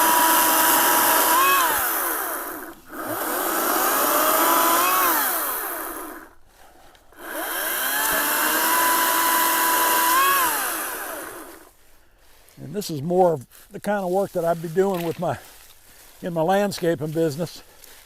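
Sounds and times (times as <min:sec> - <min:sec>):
electric chainsaw motor whining: 0:00.0 - 0:06.4, 0:07.1 - 0:11.7.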